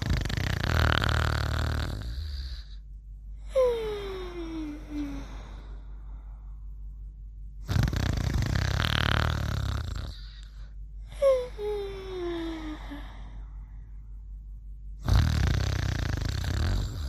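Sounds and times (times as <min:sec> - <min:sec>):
rasping snore: 0:00.0 - 0:02.8, 0:07.6 - 0:10.5, 0:15.0 - 0:17.0.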